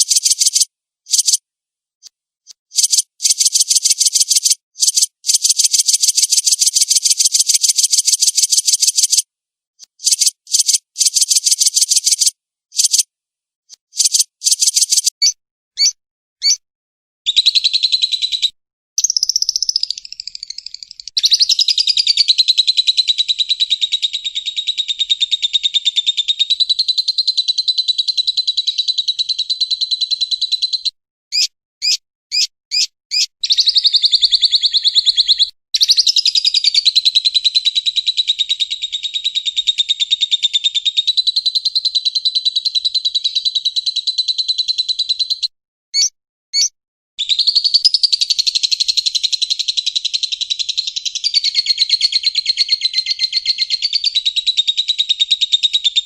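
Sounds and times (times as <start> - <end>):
lovebird chattering trill: 0.0 - 1.4, 2.7 - 9.2, 9.9 - 13.0, 13.9 - 16.6, 19.0 - 22.4, 46.0 - 46.7
short bird chirps: 0.0 - 1.4, 2.5 - 9.2, 9.8 - 13.0, 13.7 - 16.6, 17.3 - 22.2, 30.7 - 36.8, 45.1 - 48.4.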